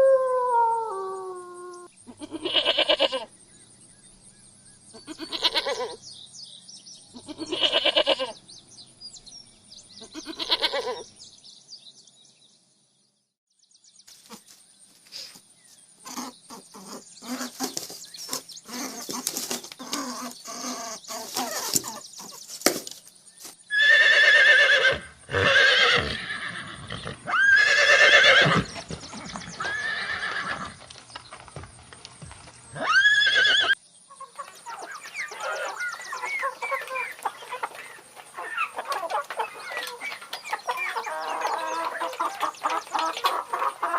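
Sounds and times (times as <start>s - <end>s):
goat bleating: 2.1s - 3.3s, 5.0s - 6.0s, 7.2s - 8.3s, 10.1s - 11.0s
horses neighing: 23.7s - 30.8s, 32.7s - 33.8s.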